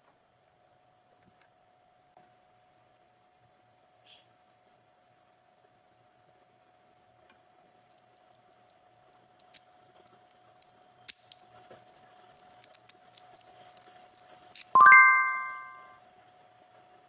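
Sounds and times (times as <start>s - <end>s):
multi-tone chime: 14.8s - 15.9s.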